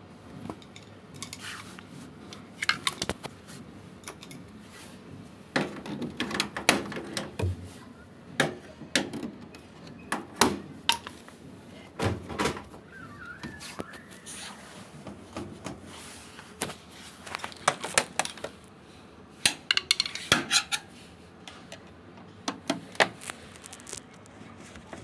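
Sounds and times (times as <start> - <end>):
hard parts knocking and rattling: 19.5 - 20.8.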